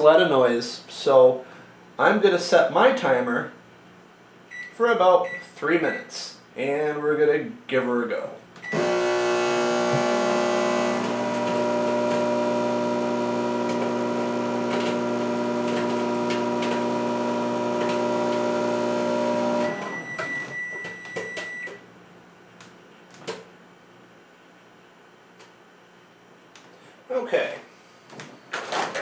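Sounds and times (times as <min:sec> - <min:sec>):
microwave oven humming: 0:08.6 - 0:22.0.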